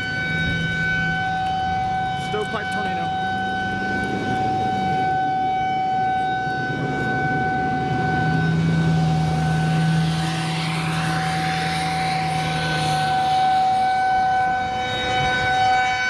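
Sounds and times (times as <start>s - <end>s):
tornado warning siren: 0.0s - 16.0s
traffic noise: 0.0s - 16.0s
wind rumble: 0.0s - 16.0s
low hum: 3.0s - 15.8s.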